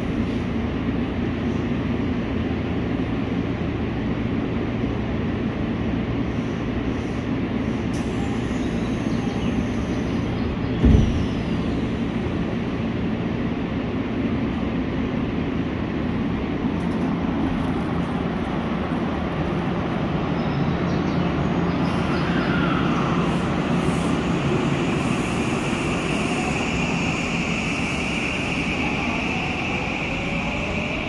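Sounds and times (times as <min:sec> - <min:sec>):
electric train rumble: 0:00.0 - 0:31.0
short thump: 0:10.8 - 0:11.3.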